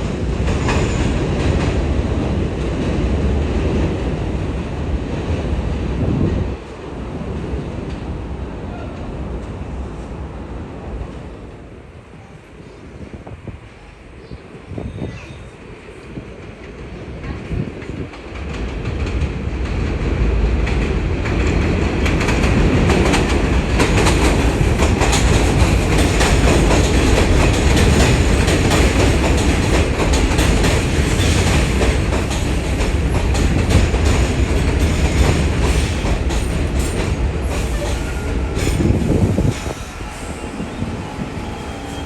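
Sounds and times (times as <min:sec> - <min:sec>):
subway train wheels clattering: 0:00.0 - 0:42.0.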